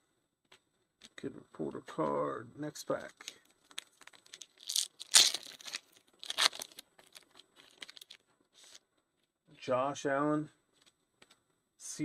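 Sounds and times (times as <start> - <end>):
foil wrapper tearing and crinkling: 3.6 - 8.8.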